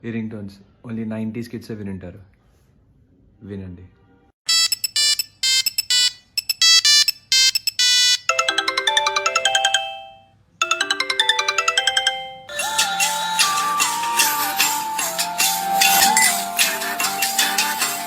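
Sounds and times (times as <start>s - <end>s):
rapid electronic phone beeps: 4.5s - 9.8s, 12.6s - 18.0s
beeping ringtone melody: 4.5s - 18.0s.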